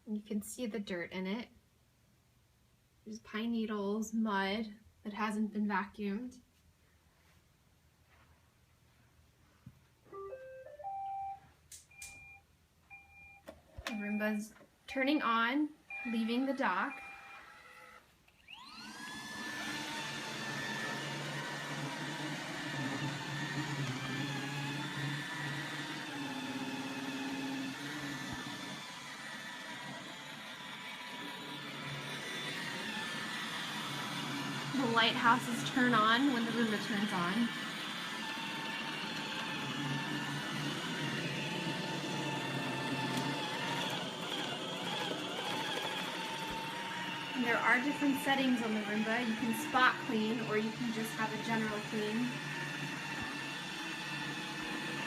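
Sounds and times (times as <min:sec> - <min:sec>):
robot vacuum motor whine: 0:15.9 - 0:55.0.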